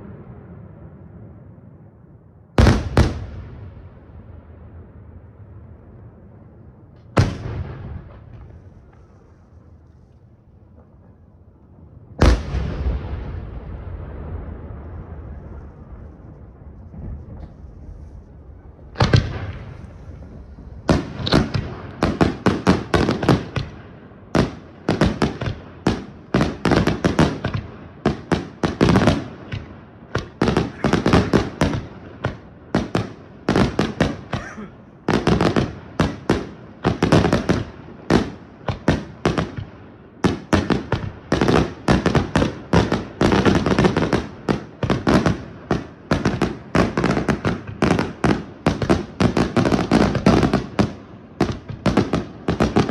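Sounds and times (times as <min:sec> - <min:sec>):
fireworks bangs and crackles: 0:00.0 - 0:52.9
firework boom: 0:12.2 - 0:21.8.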